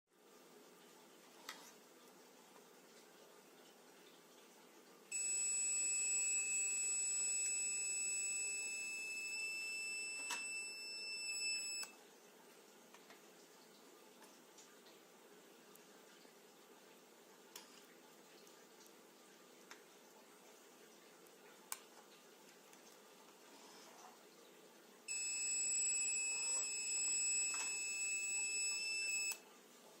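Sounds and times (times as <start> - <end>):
high-pitched buzzer tone: 5.1 - 11.9, 25.1 - 29.4.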